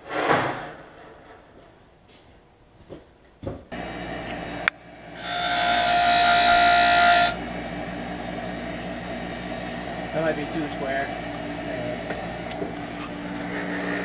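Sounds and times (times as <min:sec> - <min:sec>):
power tool whirring: 0:03.7 - 0:14.0
steady machine hum: 0:03.7 - 0:14.0.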